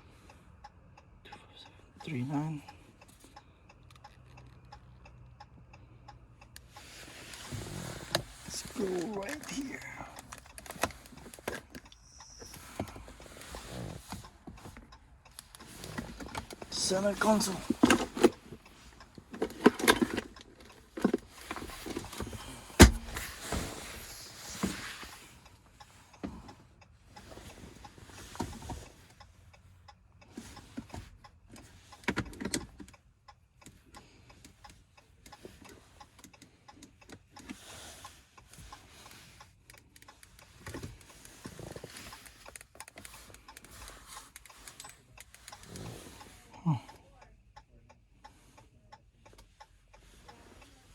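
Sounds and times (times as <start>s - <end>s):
scattered clicks: 0.6s - 23.0s, 25.1s - 50.8s
rustling handling noises: 6.8s - 25.5s.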